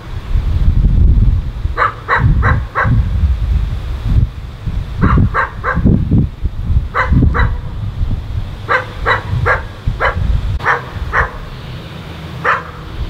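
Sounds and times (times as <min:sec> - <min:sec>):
dog barking: 0:01.8 - 0:03.1, 0:05.0 - 0:05.9, 0:06.9 - 0:07.7, 0:08.7 - 0:11.5, 0:12.4 - 0:12.9.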